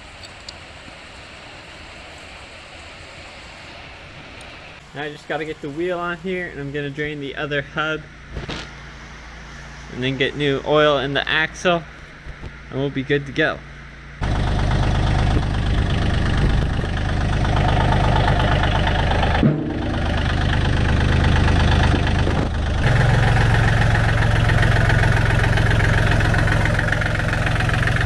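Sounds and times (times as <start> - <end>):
tractor diesel engine running: 0.0 - 28.0.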